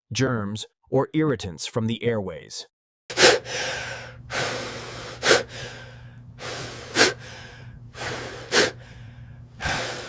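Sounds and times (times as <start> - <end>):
hissing breaths: 3.1 - 10.0
faint steady hum: 3.2 - 10.0.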